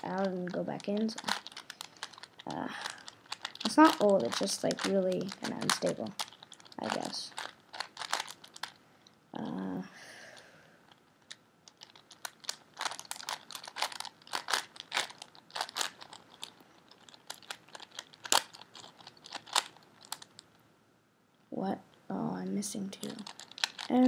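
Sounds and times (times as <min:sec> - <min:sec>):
puzzle cube clicking: 0:00.0 - 0:08.8, 0:11.2 - 0:20.4, 0:23.0 - 0:24.0.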